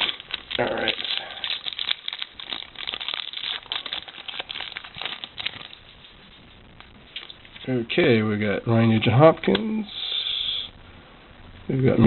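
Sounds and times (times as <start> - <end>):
card wrapper crinkling and tearing: 0.0 - 6.3.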